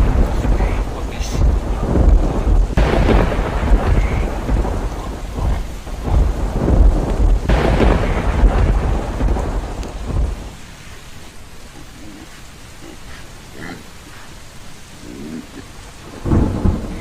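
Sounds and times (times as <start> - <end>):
rolling thunder: 0.0 - 10.9, 16.0 - 17.0
heavy rain: 0.0 - 17.0.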